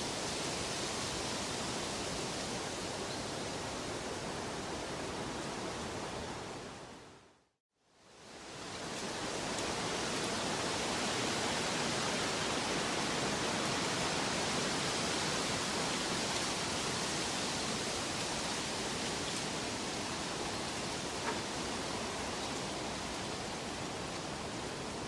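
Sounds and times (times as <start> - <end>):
rushing water: 8.1 - 25.0.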